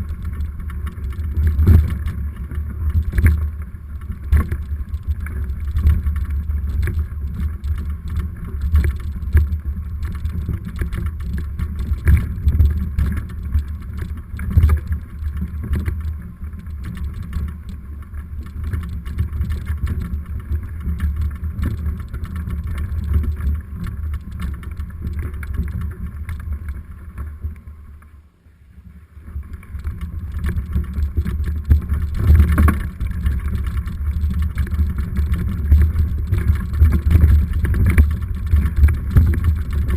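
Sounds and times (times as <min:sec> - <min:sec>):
bike rattling knocks: 0:00.0 - 0:27.4
tyres and wind rumble: 0:29.2 - 0:39.9.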